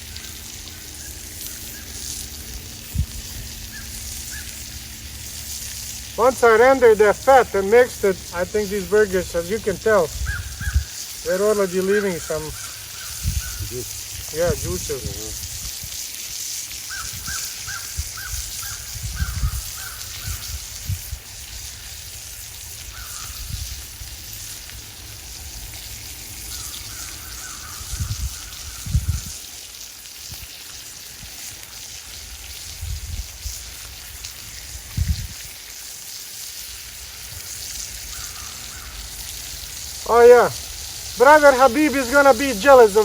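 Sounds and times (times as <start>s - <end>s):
bird calling in rapid runs: 0.0s - 2.5s, 3.4s - 5.3s, 6.1s - 13.9s, 16.9s - 20.5s, 22.9s - 23.5s, 26.4s - 29.3s, 38.0s - 39.2s
fire crackling: 0.0s - 43.0s
patties sizzling: 0.0s - 43.0s.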